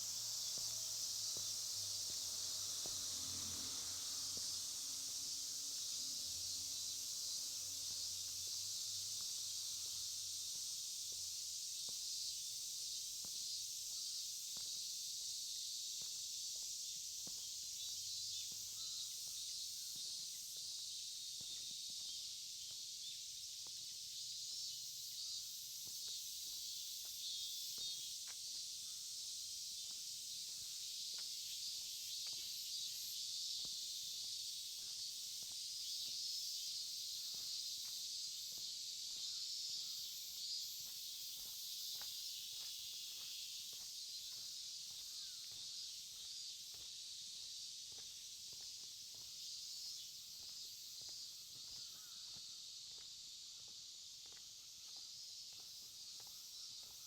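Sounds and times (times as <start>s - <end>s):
soft footsteps: 0.0s - 3.4s, 29.8s - 39.4s, 40.8s - 57.0s
shrill insect chorus: 0.0s - 57.0s.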